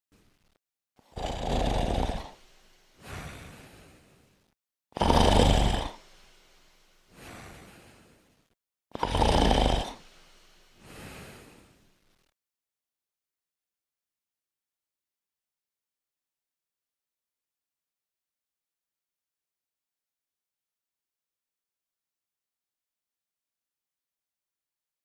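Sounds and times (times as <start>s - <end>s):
cat snoring: 0.4s - 6.4s, 7.2s - 12.3s.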